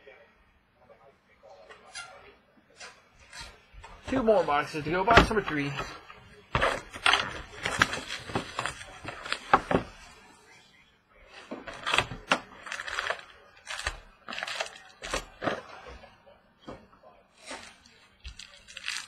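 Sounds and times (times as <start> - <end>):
paper tearing: 11.4 - 15.6, 17.4 - 19.0
wrapper crinkling: 17.5 - 19.0.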